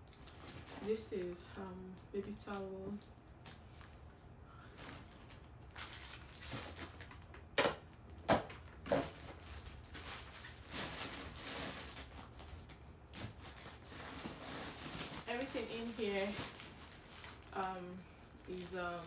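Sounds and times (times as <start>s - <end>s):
packaging rustling and crinkling: 0.0s - 1.4s, 2.5s - 7.6s, 8.3s - 19.0s.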